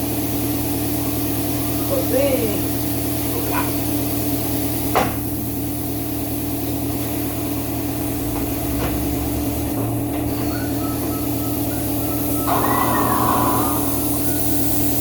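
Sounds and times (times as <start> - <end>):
machine humming: 7.0 - 15.0.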